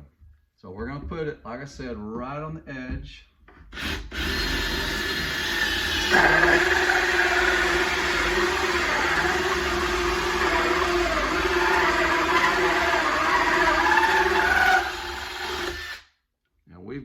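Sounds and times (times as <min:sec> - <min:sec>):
hole saw grinding wood: 0:03.8 - 0:16.0
power drill motor whine: 0:03.8 - 0:16.0.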